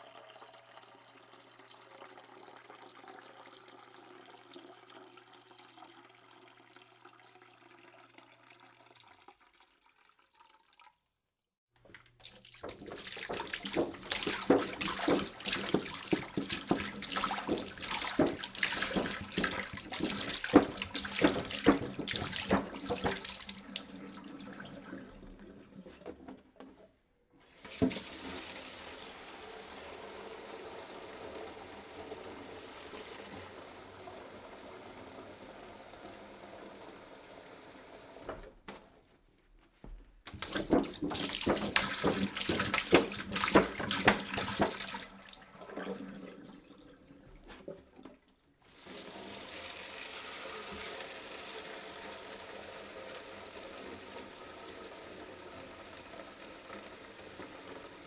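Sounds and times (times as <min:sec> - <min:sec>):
running water: 0:11.8 - 0:38.5, 0:40.3 - 0:58.0
tap water splashing into sink: 0:11.8 - 0:38.8, 0:40.3 - 0:58.0.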